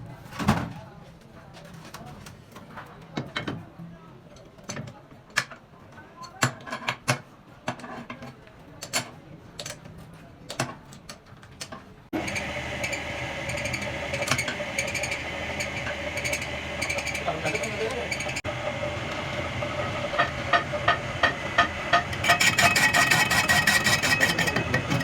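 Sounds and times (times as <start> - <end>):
machine running with whine: 12.2 - 25.0.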